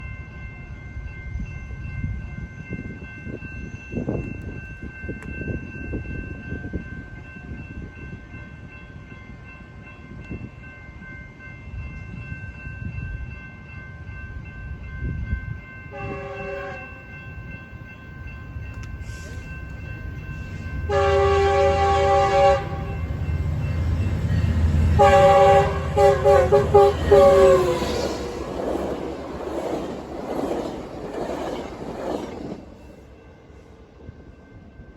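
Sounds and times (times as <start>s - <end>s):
low rumble of passing train: 0.0s - 34.9s
locomotive air horn blasts: 15.9s - 17.0s, 20.9s - 23.1s, 24.9s - 27.9s.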